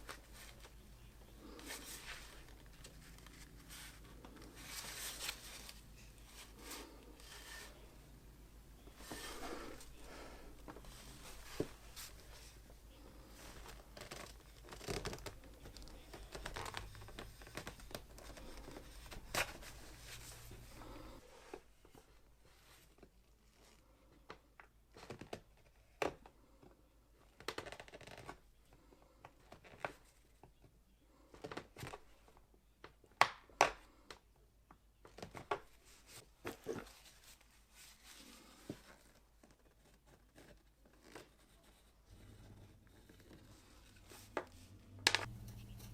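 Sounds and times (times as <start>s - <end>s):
low background noise: 0.0s - 45.9s.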